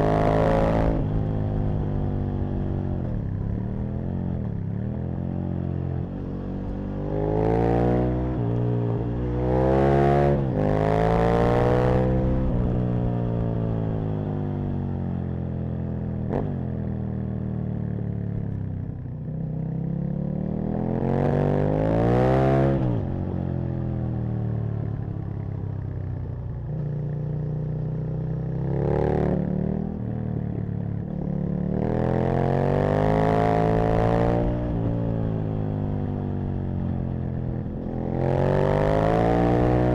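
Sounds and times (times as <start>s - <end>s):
motorcycle engine revving: 26.6s - 39.9s.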